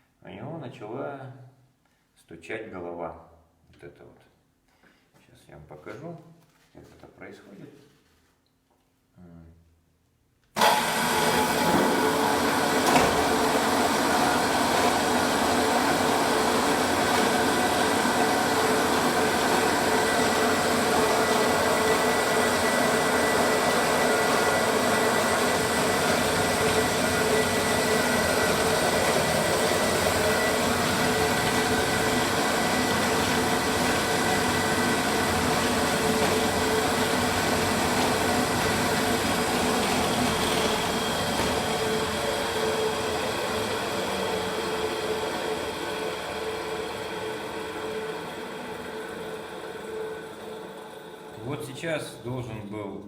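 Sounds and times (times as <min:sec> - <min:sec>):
sharpening machine whirring: 0:10.6 - 0:51.3.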